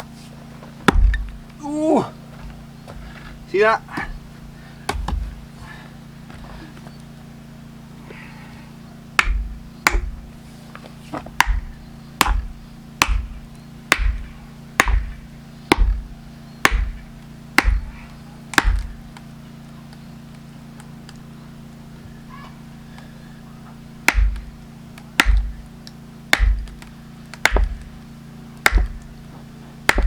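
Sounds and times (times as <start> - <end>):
wedge being struck into log: 0.8 - 1.5, 3.9 - 5.4, 9.1 - 10.3, 11.2 - 19.0, 24.0 - 28.0, 28.6 - 29.2.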